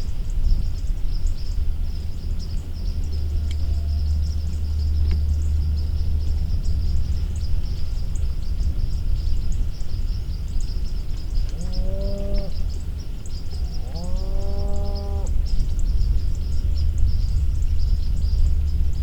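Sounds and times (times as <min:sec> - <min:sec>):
steady low rumble: 0:00.0 - 0:19.0
moo-like animal call: 0:11.5 - 0:12.7, 0:13.7 - 0:15.4.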